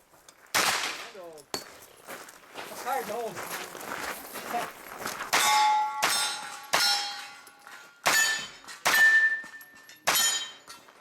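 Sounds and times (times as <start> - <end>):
bullets hitting steel targets: 5.3 - 11.0.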